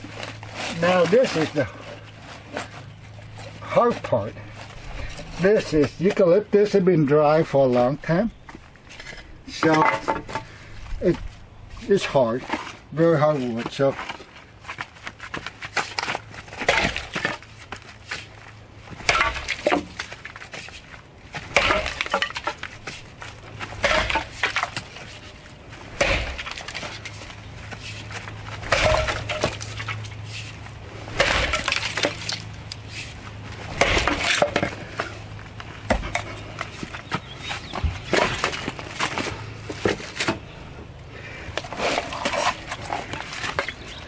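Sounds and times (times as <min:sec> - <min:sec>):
axe chopping into hard wood: 0:15.7 - 0:17.4, 0:19.0 - 0:20.0, 0:21.4 - 0:23.0, 0:23.8 - 0:24.9, 0:25.9 - 0:27.0, 0:28.6 - 0:29.8, 0:31.1 - 0:32.5, 0:33.7 - 0:35.0, 0:35.8 - 0:36.3.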